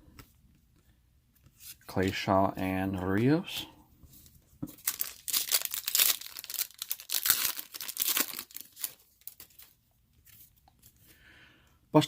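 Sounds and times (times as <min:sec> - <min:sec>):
plastic wrapper crinkling: 0:04.2 - 0:10.9.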